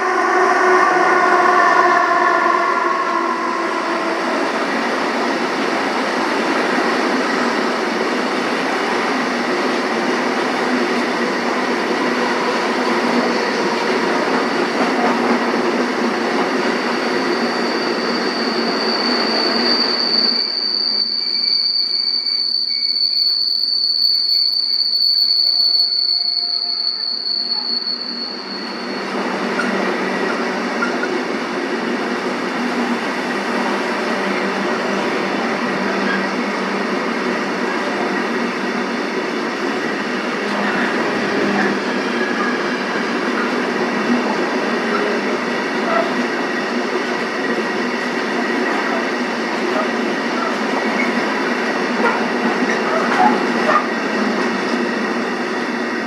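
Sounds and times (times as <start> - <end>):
high wheel squeal: 0.0 - 31.2, 39.6 - 46.6
train wheels rolling on rails: 0.0 - 56.0.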